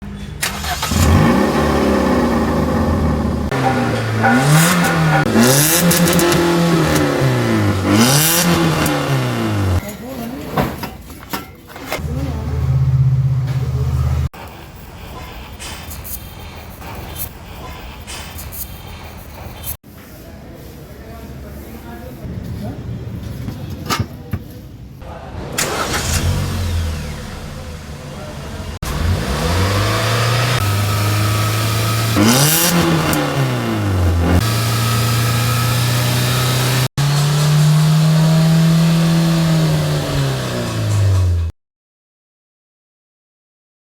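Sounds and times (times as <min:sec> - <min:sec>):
car engine revving with rasp: 0:00.4 - 0:09.8, 0:12.0 - 0:14.3, 0:25.4 - 0:41.5.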